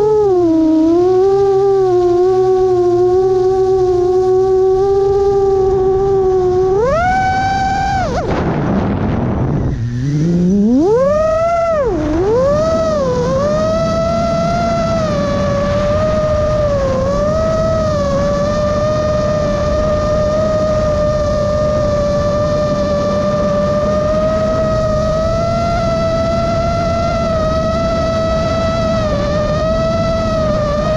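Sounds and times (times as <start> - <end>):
quadcopter motors whining: 0.0 - 30.9
rushing noise: 5.7 - 21.2.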